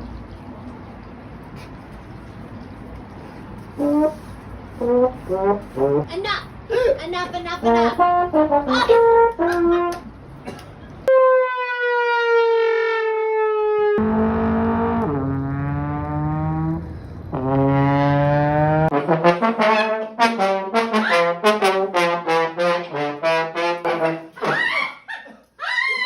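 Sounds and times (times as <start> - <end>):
trombone playing: 3.8 - 6.1, 7.6 - 10.0, 13.8 - 24.5.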